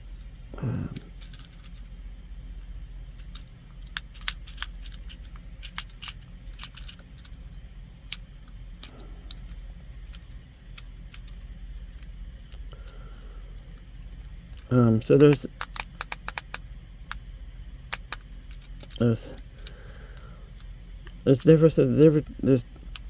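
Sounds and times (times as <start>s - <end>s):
fidget cube clicks: 3.2s - 7.3s, 14.6s - 17.2s, 17.9s - 20.2s.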